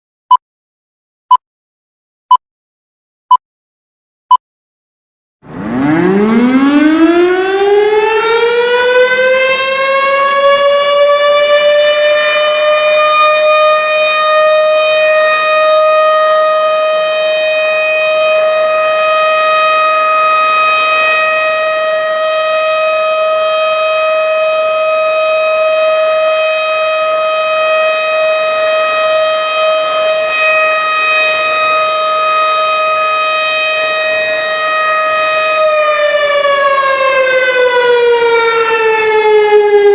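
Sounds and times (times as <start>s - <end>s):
siren winding up: 5.4s - 17.2s.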